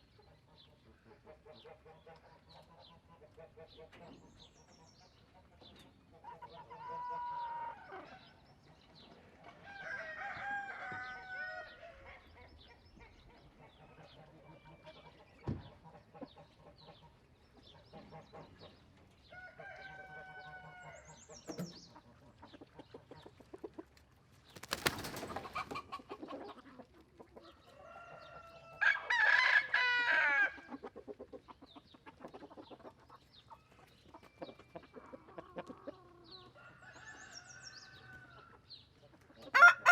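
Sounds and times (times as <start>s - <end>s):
chickens clucking: 0.0s - 39.9s
roosters crowing: 9.7s - 11.8s, 27.7s - 30.6s, 39.5s - 39.9s.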